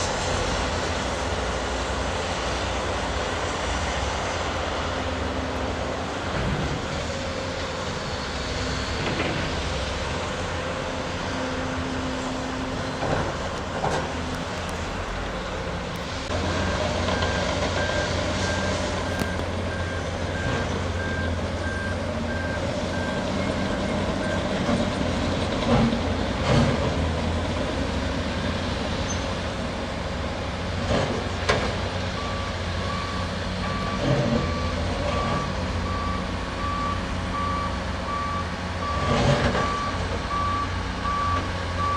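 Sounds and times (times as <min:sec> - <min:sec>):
diesel engines running: 0:00.0 - 0:41.9
high-pitched reversing alarm beeping: 0:32.2 - 0:41.9
low-pitched reversing alarm beeping: 0:32.2 - 0:41.9.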